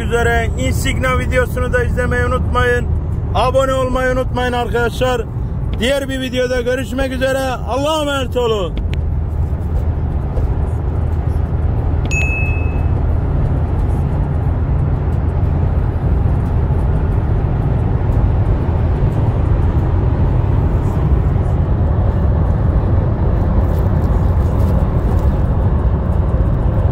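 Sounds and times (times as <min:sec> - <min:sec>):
road and engine noise in cabin: 0:00.0 - 0:26.9
short ding: 0:12.1 - 0:13.0.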